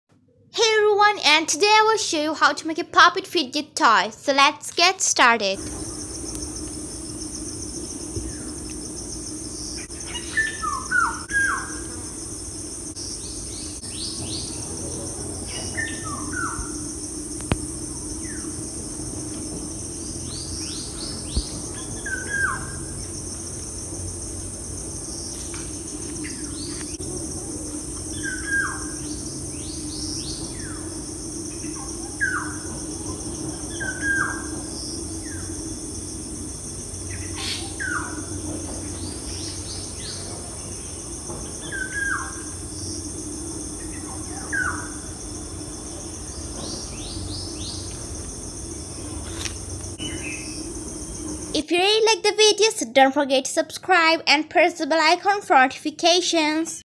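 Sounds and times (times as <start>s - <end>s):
insect drone: 1.0s - 56.8s
low steady hum: 5.2s - 53.0s
bird chirps: 9.6s - 12.0s, 20.1s - 22.9s.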